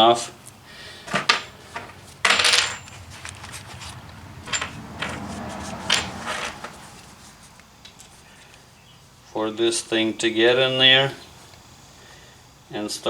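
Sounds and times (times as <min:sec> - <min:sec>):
metal tool pieces clinking: 0:01.0 - 0:07.0.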